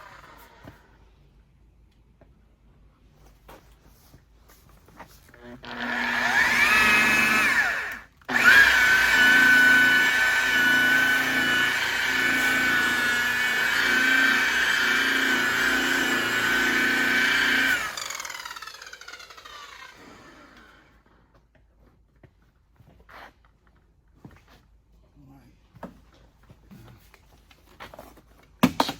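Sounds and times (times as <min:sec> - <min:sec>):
electric polisher whining: 0:05.4 - 0:20.9.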